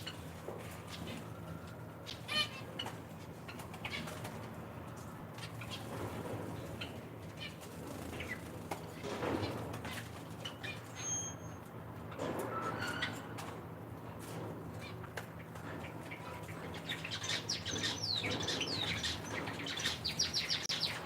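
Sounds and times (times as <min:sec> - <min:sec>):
wings fluttering: 0:02.6 - 0:11.0
finches chirping: 0:16.1 - 0:21.0.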